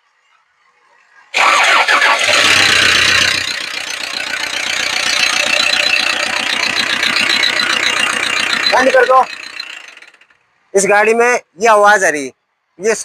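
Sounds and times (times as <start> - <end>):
car engine starting and idling: 1.4 - 10.6
fast regular engine knocking: 2.2 - 10.4.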